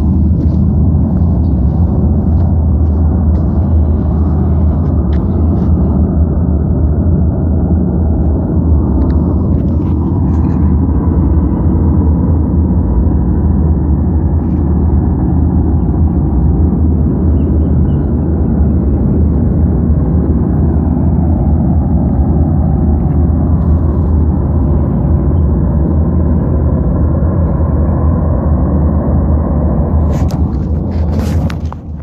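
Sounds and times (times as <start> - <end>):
deep rumbling drone: 0.0 - 32.0.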